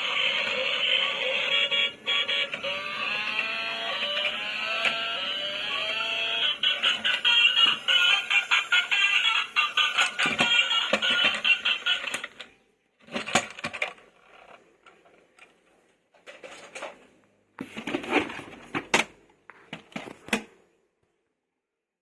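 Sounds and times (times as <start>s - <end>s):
music: 4.2s - 12.5s
plastic toy vehicles clattering: 9.8s - 20.3s.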